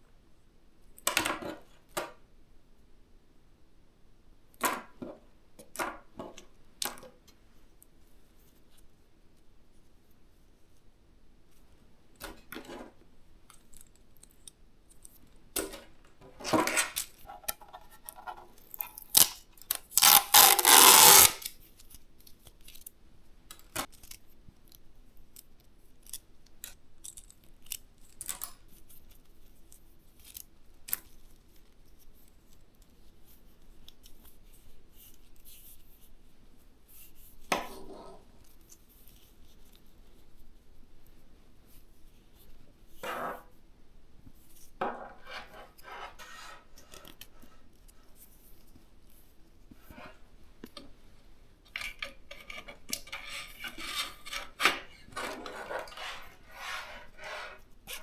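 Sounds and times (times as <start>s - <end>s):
clicks and rustles of parts: 13.5s - 36.0s, 51.7s - 56.4s
loud rasping rustle: 20.0s - 21.5s, 53.1s - 57.7s.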